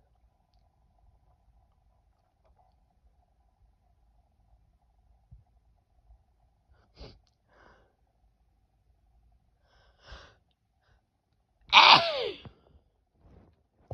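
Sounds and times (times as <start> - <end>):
woman sneezing loudly: 11.7 - 12.5.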